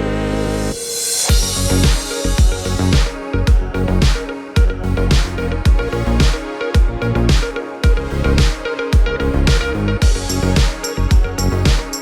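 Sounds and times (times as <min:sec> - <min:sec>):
upbeat electronic music: 0:00.0 - 0:12.0.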